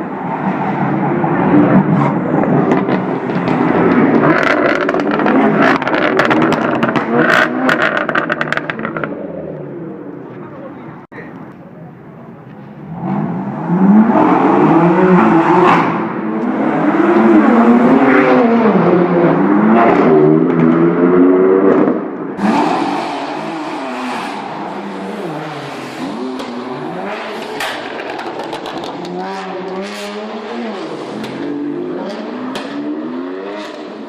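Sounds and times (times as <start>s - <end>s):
car engines revving in a tunnel: 0.0s - 10.3s, 12.8s - 34.0s
exhaust cracks: 1.9s - 9.2s, 21.7s - 32.8s.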